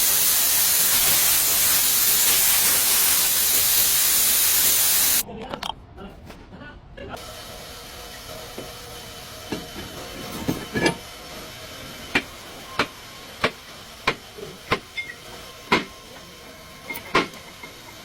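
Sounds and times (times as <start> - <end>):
steady hiss: 0.0 - 5.2.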